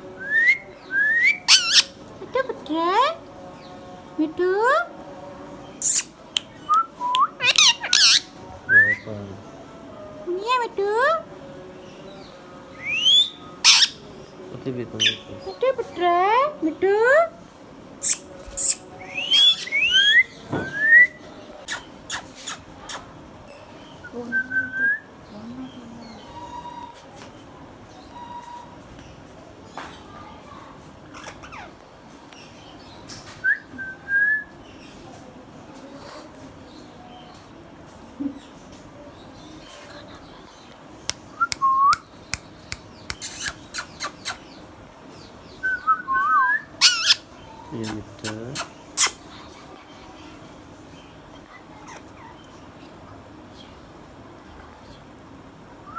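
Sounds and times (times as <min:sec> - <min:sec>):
parakeet whistling: 0:01.0 - 0:01.9, 0:05.8 - 0:06.1, 0:06.7 - 0:09.1, 0:12.8 - 0:14.0, 0:18.0 - 0:21.1, 0:46.2 - 0:47.2
sharp bird clicks: 0:41.1 - 0:44.4.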